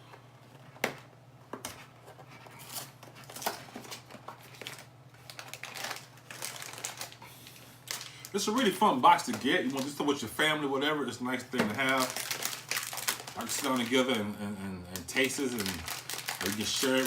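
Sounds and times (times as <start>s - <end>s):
low steady hum: 0.0s - 17.0s
cardboard box tearing and crinkling: 15.5s - 17.0s.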